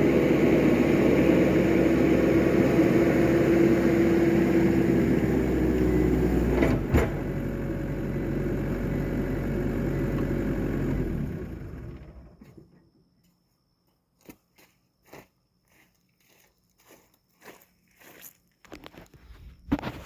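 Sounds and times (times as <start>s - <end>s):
skid steer engine running: 0.0s - 12.8s.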